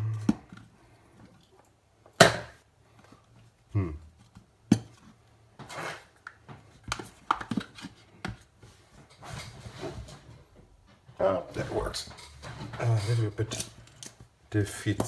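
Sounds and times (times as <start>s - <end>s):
tools clicking on a workbench: 12.1s - 14.2s.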